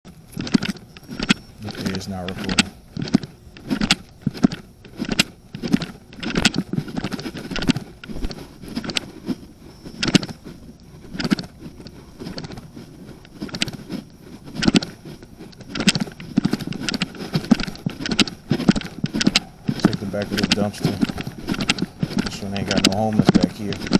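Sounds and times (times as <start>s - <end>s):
sharp clicks and knocks: 13.2s - 23.9s.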